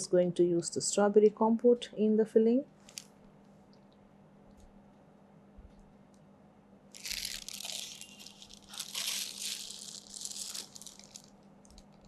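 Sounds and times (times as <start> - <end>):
plastic crinkling and rustling: 2.9 - 3.1, 7.0 - 12.0.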